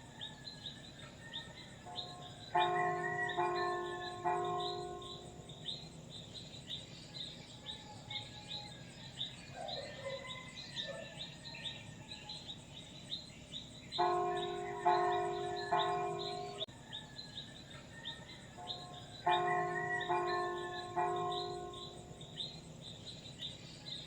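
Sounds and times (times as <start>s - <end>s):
small birds chirping: 0.6s - 17.1s
church bell ringing: 1.9s - 6.0s, 14.0s - 16.7s, 18.6s - 22.7s.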